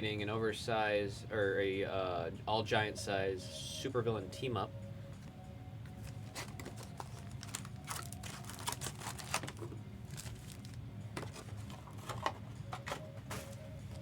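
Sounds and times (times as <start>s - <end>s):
card packs crinkling: 6.0s - 13.6s.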